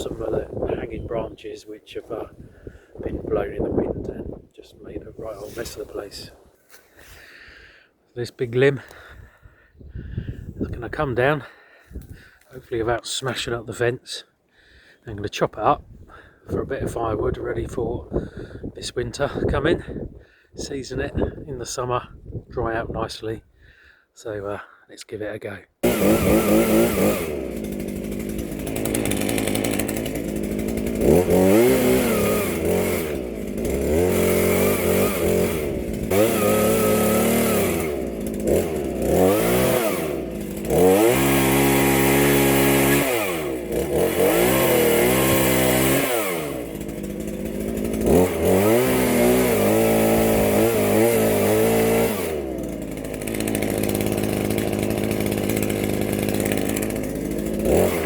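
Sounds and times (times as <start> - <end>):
chainsaw revving and cutting wood: 0.0 - 4.1, 5.2 - 6.3, 25.8 - 58.0.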